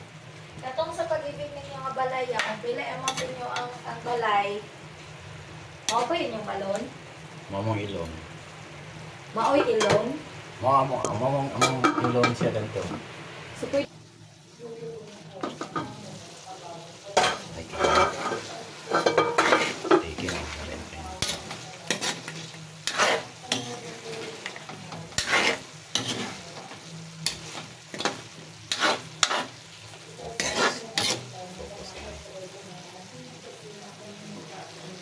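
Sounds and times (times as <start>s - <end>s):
food sizzling in a pan: 0.0s - 35.0s
utensil scraping a pan: 17.2s - 32.1s.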